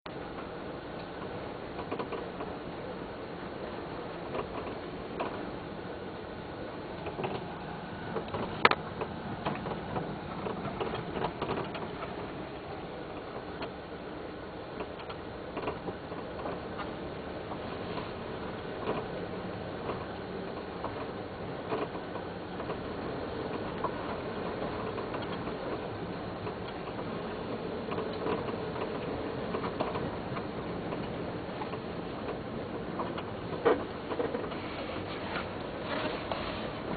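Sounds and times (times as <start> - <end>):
steady background noise: 0.1 - 36.9
suspension knocks and rattles: 7.0 - 13.8, 14.8 - 36.9.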